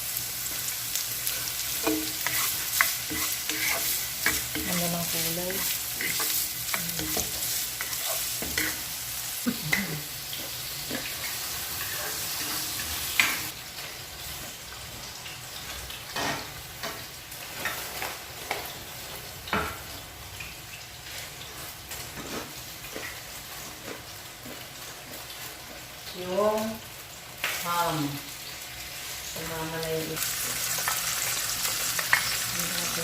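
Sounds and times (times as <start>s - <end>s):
sausage sizzling in hot oil: 0.0s - 33.0s
spatula scraping a pan: 1.2s - 9.0s.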